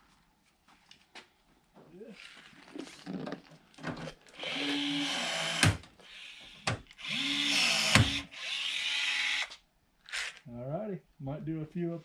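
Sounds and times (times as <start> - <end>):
rivet gun motor whine: 4.4 - 9.5.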